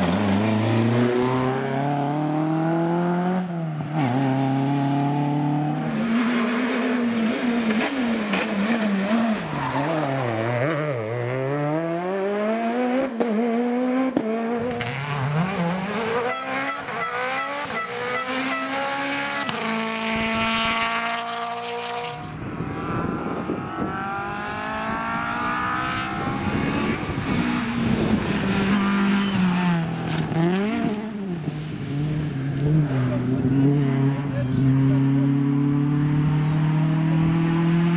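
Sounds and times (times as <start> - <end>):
rally car engines revving: 0.0 - 37.9.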